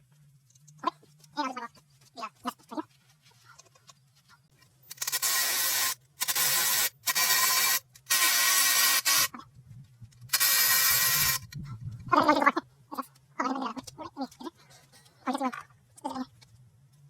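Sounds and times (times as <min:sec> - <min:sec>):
pressurised spray hissing: 0:10.4 - 0:11.4.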